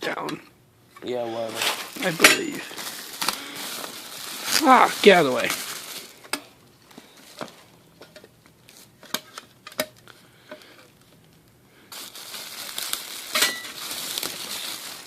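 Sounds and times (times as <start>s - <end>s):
packaging crinkling: 1.4s - 7.7s, 10.9s - 15.0s.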